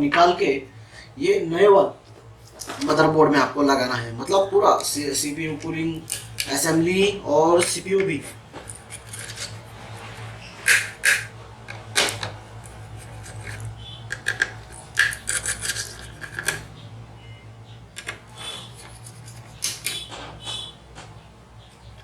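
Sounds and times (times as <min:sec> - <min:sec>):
steady low hum: 0:00.0 - 0:22.0
small metallic clicks and scrapes: 0:08.6 - 0:16.7, 0:18.0 - 0:21.1.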